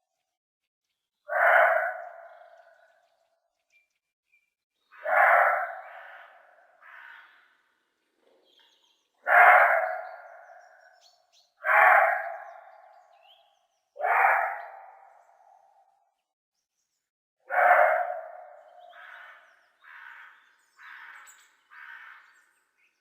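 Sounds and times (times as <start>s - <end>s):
deer barking: 5.0s - 6.2s, 9.2s - 10.1s, 11.6s - 12.3s, 14.0s - 14.7s.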